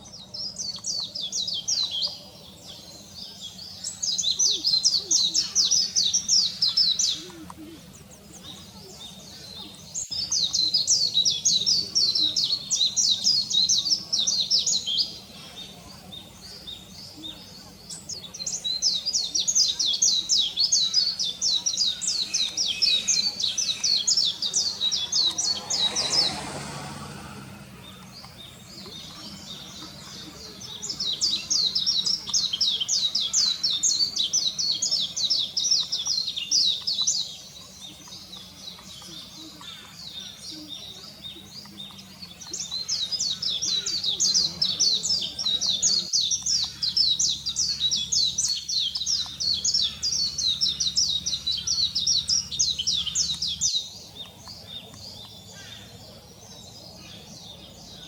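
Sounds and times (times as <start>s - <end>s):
bird twittering: 0.0s - 26.3s, 27.2s - 58.0s
soft rushing noise: 22.1s - 31.6s.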